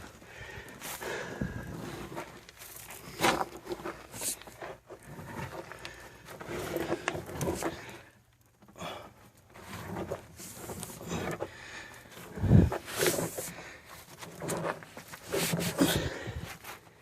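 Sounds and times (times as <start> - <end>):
person scuffing through dirt tunnel: 0.0 - 8.0.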